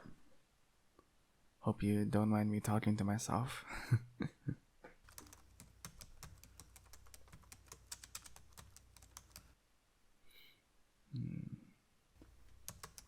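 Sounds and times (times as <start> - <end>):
typing on keyboard: 5.1 - 9.6, 12.2 - 13.0.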